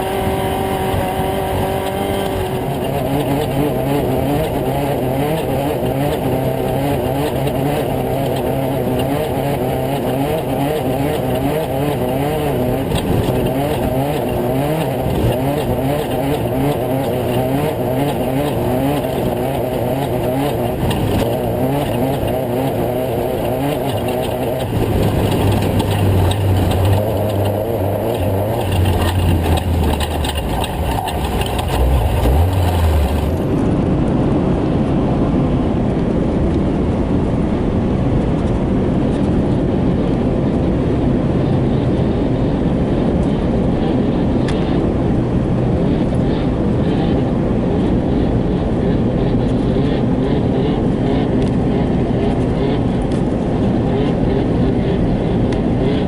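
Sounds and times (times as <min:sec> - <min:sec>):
truck engine revving: 0:00.0 - 0:33.7
deep steady drone: 0:00.0 - 0:56.0.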